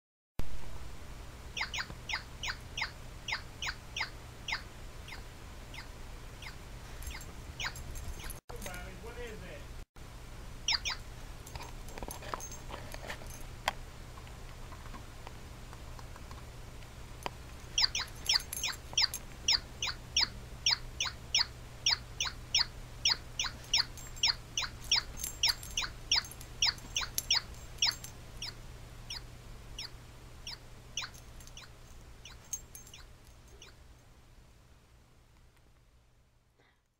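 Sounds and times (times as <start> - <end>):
steady low hum: 0.5 - 36.9
pet animal squeaky chirps: 1.6 - 8.4, 10.7 - 11.0, 17.8 - 33.8.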